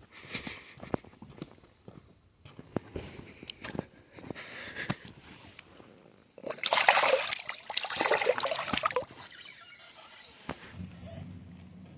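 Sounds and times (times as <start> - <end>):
water splashing: 6.4 - 9.2.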